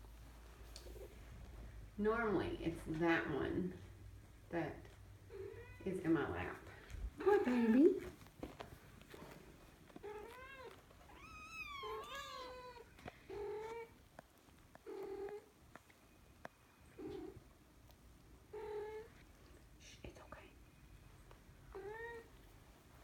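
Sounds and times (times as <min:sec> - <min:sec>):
cats meowing: 0:09.9 - 0:14.0, 0:21.7 - 0:22.4.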